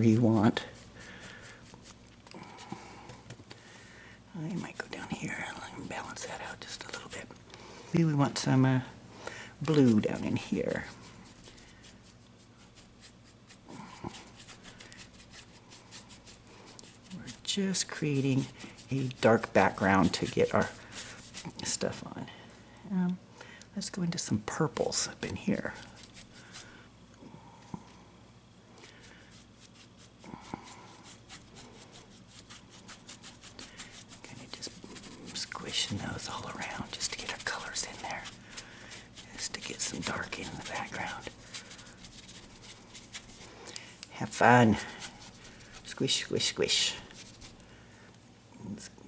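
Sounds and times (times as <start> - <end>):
paintbrush scratching on canvas: 0.1 - 2.2, 4.5 - 7.3, 9.6 - 22.2, 25.6 - 26.6, 28.8 - 43.5, 44.3 - 47.6.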